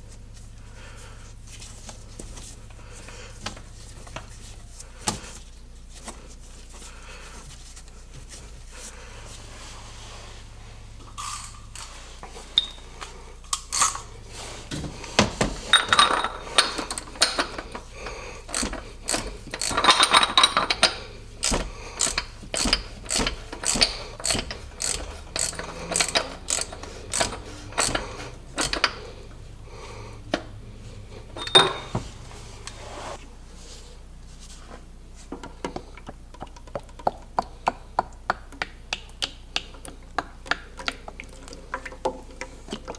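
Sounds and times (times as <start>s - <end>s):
metal tools clicking and clanking: 11.2s - 12.0s, 13.5s - 14.1s, 15.2s - 29.4s, 31.2s - 31.9s.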